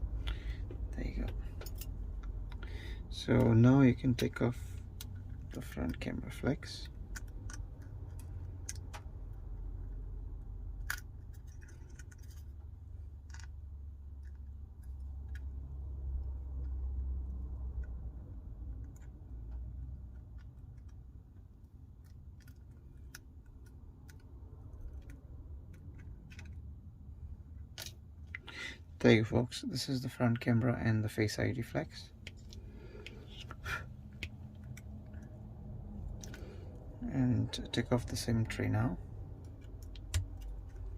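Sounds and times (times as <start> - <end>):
low steady rumble: 0.0 - 40.9.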